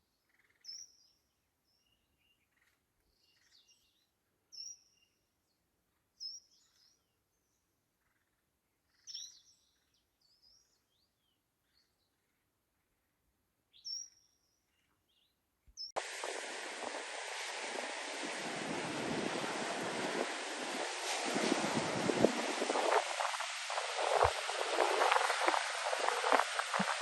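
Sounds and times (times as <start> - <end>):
loud steady rushing noise: 16.0 - 27.0.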